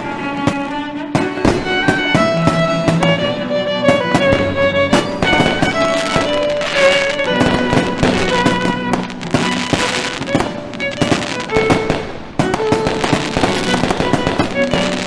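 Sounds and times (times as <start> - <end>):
violin melody: 0.0 - 15.0
fireworks banging: 4.4 - 15.0
fireworks crackling: 5.0 - 15.0.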